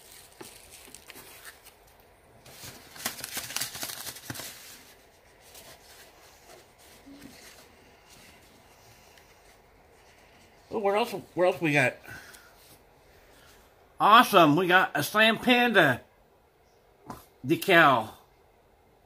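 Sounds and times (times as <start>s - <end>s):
packaging rustling and crinkling: 0.0s - 10.8s.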